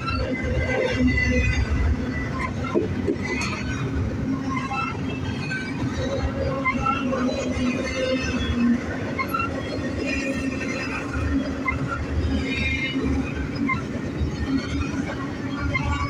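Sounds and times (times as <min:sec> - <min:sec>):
steel wheels rumbling on rail: 0:00.0 - 0:16.0
wheel squeals: 0:00.0 - 0:16.0.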